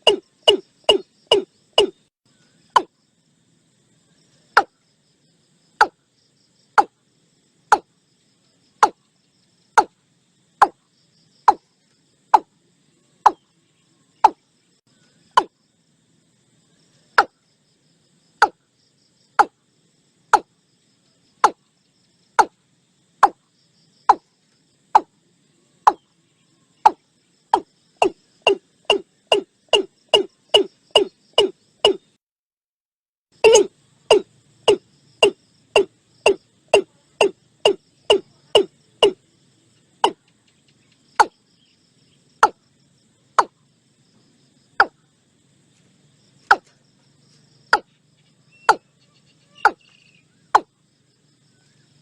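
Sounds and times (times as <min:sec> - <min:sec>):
bird calling sharp kok notes: 0:00.0 - 0:01.9.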